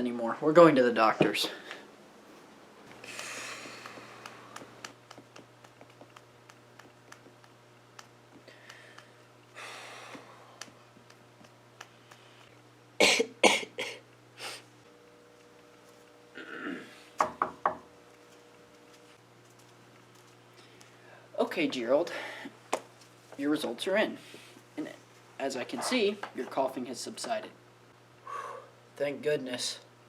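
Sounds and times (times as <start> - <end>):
man coughing: 13.0 - 14.0
rasping throat-clear: 16.4 - 17.0.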